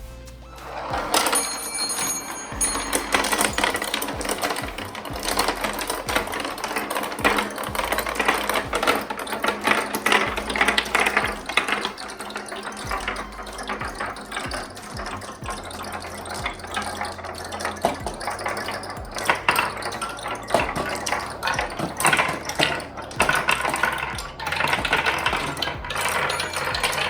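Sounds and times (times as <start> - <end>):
brief high ringing: 0.0 - 6.6
marbles clattering on a track: 0.9 - 27.0.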